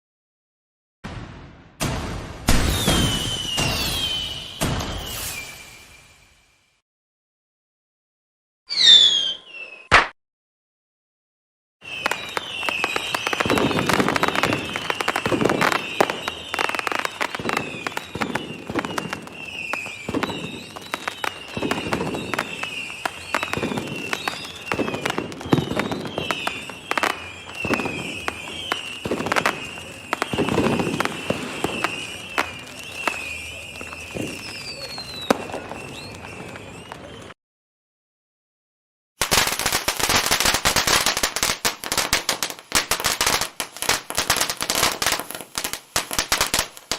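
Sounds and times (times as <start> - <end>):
deep firework booms: 1.0 - 5.2, 11.8 - 36.2
fireworks bangs and crackles: 1.0 - 6.0, 11.8 - 37.4, 39.2 - 46.9
high wavering whistle: 2.6 - 6.6, 8.7 - 10.0, 11.8 - 37.1.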